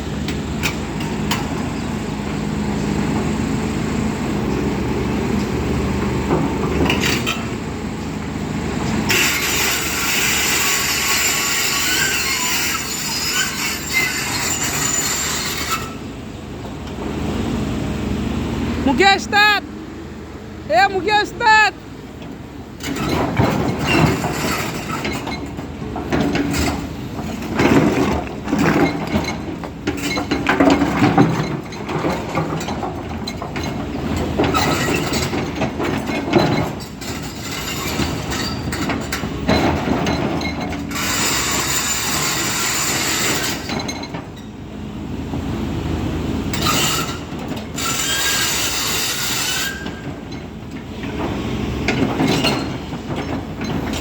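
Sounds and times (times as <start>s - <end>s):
steel track chain clanking: 9.0s - 16.1s, 22.3s - 44.6s, 46.4s - 54.0s.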